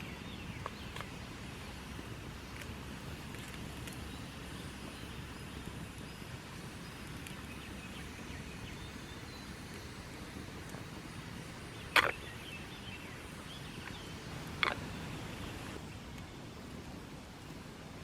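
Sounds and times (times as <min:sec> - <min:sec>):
faint bird chirps: 0:04.0 - 0:15.8.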